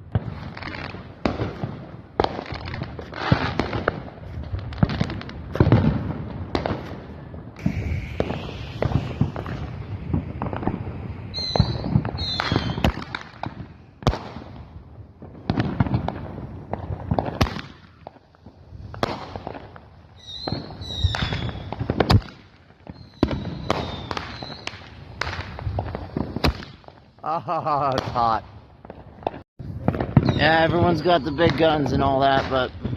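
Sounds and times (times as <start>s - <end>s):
fireworks bangs and crackles: 0.0s - 32.9s
firework whistles falling in pitch: 7.6s - 13.3s, 20.2s - 21.8s, 22.9s - 24.7s, 30.2s - 31.9s.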